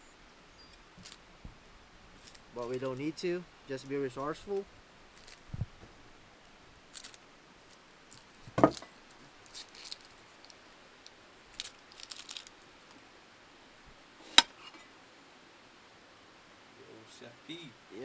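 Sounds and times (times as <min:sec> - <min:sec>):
light clinks and rustles: 0:00.6 - 0:01.4, 0:02.2 - 0:05.6, 0:06.4 - 0:13.0.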